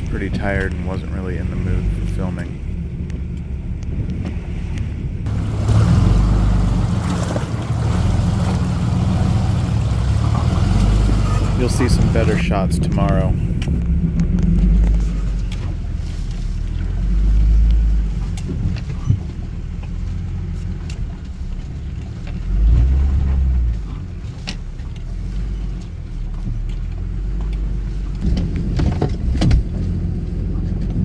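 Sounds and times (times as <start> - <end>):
pickup truck engine rumble: 0.0 - 31.0.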